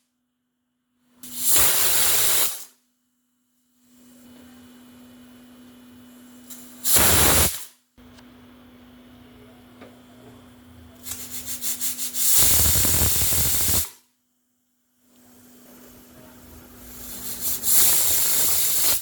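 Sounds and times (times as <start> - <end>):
pressure cooker whistle hiss: 6.9 - 7.7, 12.0 - 14.0, 16.8 - 19.0.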